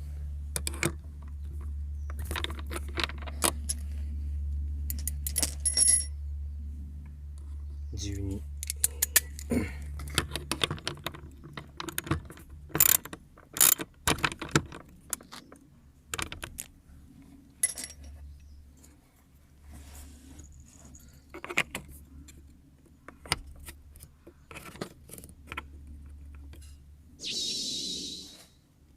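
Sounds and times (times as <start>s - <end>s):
small plastic parts clicking and rattling: 8.6s - 16.8s, 21.3s - 26.8s.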